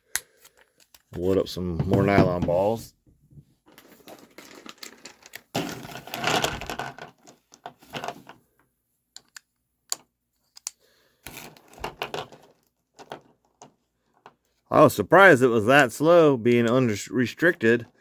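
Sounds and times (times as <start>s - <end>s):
balls rattling and clicking: 3.7s - 8.4s, 9.2s - 14.5s.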